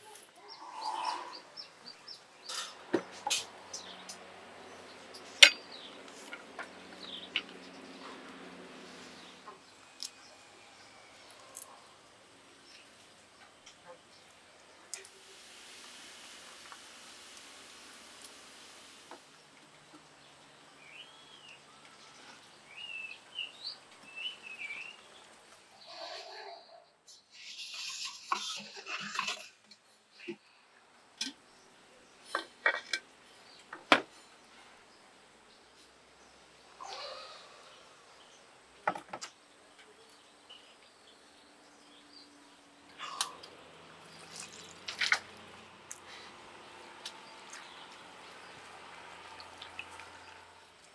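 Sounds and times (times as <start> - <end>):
faint steady hiss: 8.2 - 25.8.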